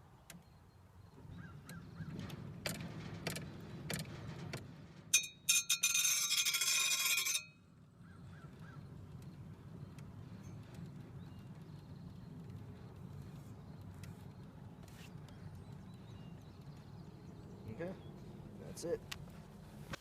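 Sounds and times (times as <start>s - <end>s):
grindstone rumble: 2.7s - 7.6s
metal scraping on grindstone: 5.2s - 7.6s.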